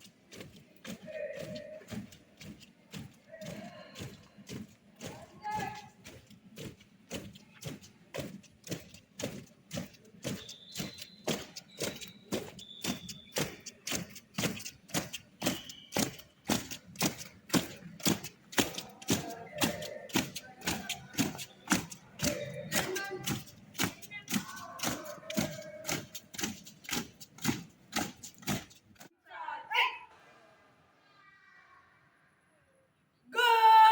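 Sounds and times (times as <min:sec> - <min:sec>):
marching footsteps thudding: 0:00.0 - 0:29.1
faint voices: 0:16.5 - 0:27.0.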